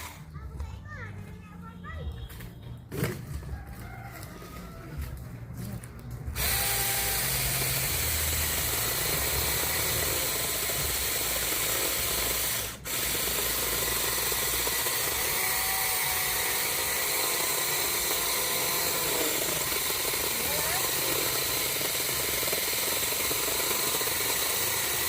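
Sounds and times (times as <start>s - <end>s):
chainsaw running: 0.0s - 0.3s, 5.7s - 25.0s.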